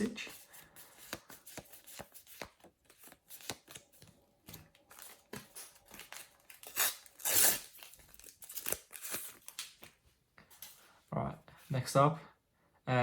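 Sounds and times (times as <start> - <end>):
paper stickers rustling: 0.0 - 10.8
foil packet ripping open: 4.9 - 9.9.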